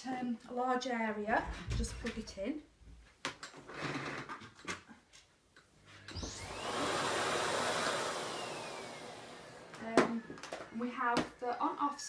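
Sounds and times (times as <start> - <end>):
vacuum cleaner motor whining: 6.1 - 10.8.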